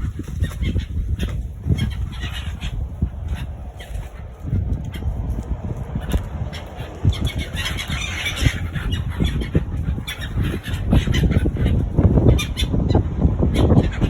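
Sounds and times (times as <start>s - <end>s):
low rumble: 0.0s - 13.6s
gulls squawking: 0.0s - 14.0s.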